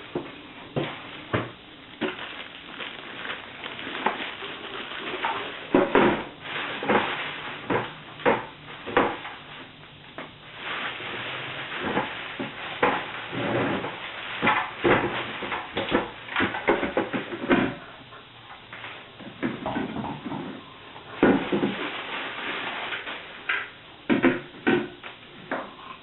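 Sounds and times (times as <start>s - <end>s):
cardboard rustling: 0.7s - 8.0s.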